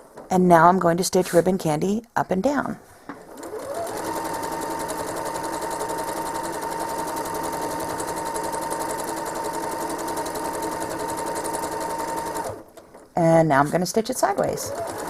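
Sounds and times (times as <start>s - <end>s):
sewing machine running: 3.3s - 12.9s, 14.3s - 15.0s.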